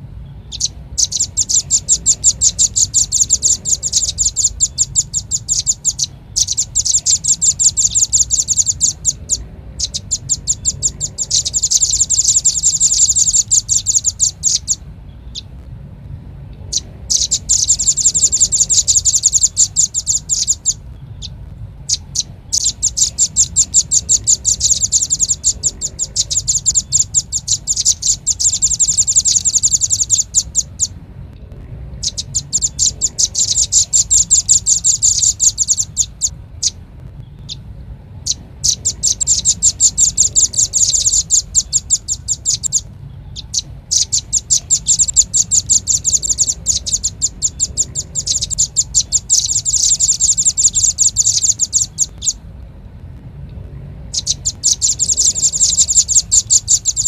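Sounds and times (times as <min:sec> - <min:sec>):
steady low hum: 0:00.0 - 0:57.0
bird calling with high chips: 0:00.2 - 0:15.6, 0:16.6 - 0:31.0, 0:32.0 - 0:37.6, 0:38.2 - 0:52.5, 0:54.1 - 0:57.0.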